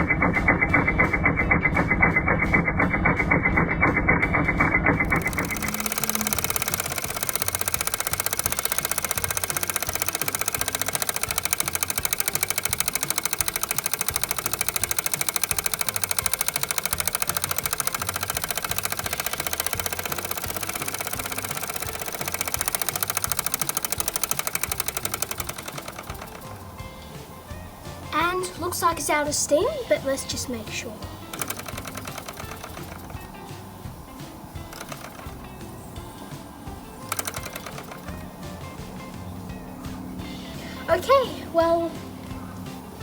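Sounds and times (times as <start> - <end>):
toy steam engine clattering: 5.0 - 39.1.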